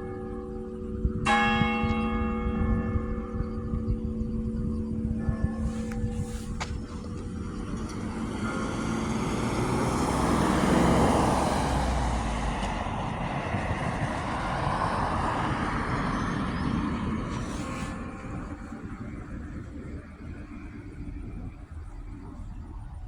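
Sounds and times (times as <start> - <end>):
church bell hum: 0.0 - 13.6
vehicle driving past: 5.6 - 19.7.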